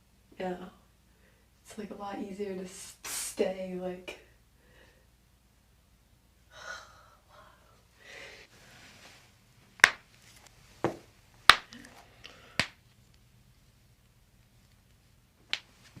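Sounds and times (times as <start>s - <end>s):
person breathing out: 6.5s - 8.5s, 11.8s - 12.8s.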